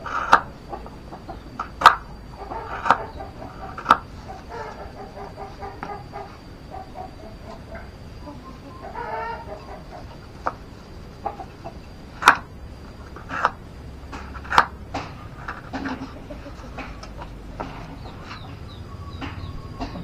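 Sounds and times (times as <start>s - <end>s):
chickens clucking: 0.0s - 20.0s.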